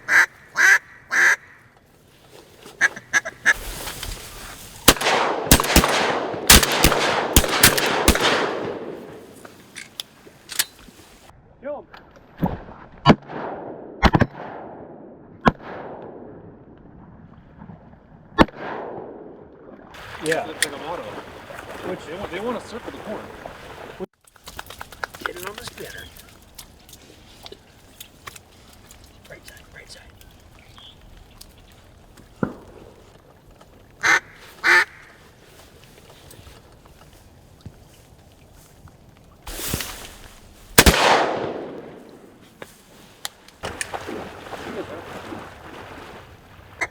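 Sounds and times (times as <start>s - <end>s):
duck call quacks: 0.1s - 1.6s, 34.0s - 35.0s
shotgun shots echoing: 4.9s - 9.5s, 13.1s - 16.2s, 40.8s - 42.4s.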